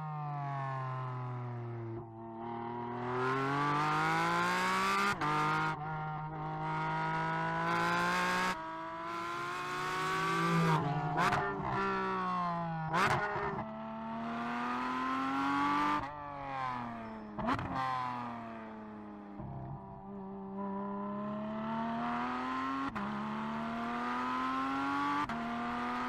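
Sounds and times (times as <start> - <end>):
engine revving: 6.6 - 16.0
race car engine accelerating: 9.4 - 13.6.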